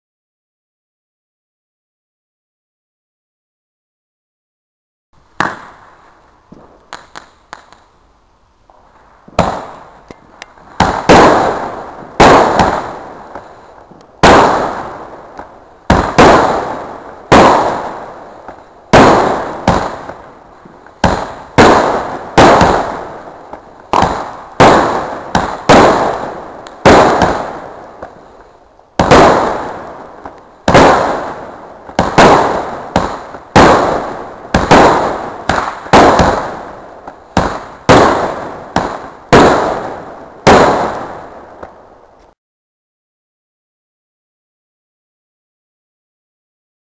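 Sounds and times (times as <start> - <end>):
firework bangs with crackle: 5.3 - 7.9, 8.7 - 42.3
sharp pop: 5.4 - 5.9, 6.5 - 7.9.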